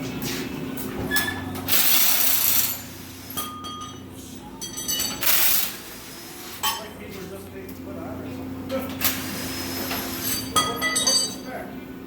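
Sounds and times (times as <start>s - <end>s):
metal tools clinking: 4.6s - 5.6s, 9.8s - 11.6s.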